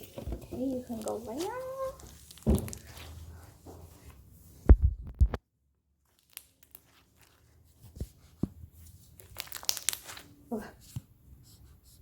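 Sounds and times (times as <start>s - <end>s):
dull low thumps: 4.7s - 5.4s.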